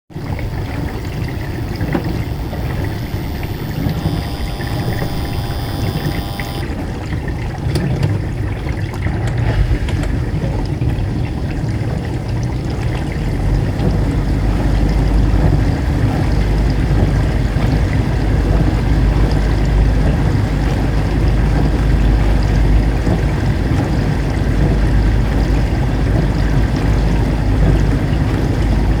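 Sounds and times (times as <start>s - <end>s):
dishwasher low rumble: 0.1s - 29.0s.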